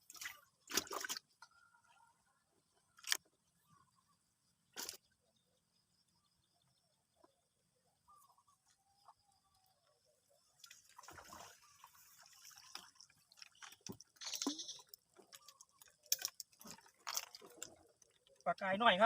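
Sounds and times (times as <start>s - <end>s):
water dripping and splashing: 0.0s - 1.4s, 10.6s - 18.7s.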